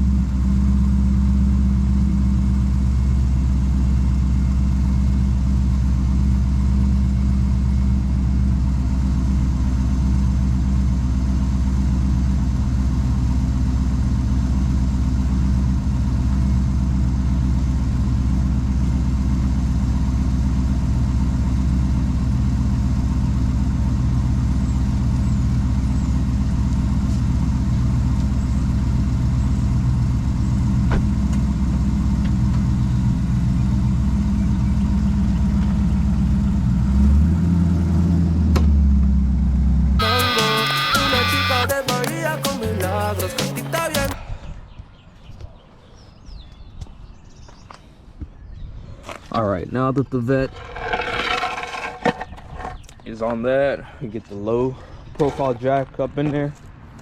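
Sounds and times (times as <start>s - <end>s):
car engine idling: 0.0s - 44.2s.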